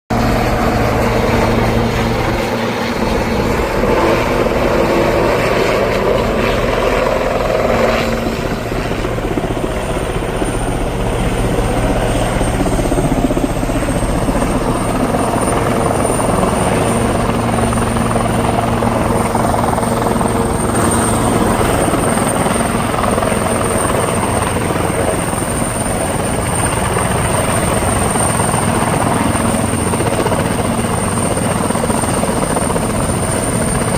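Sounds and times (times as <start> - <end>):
helicopter rotor and turbine: 0.1 - 33.9.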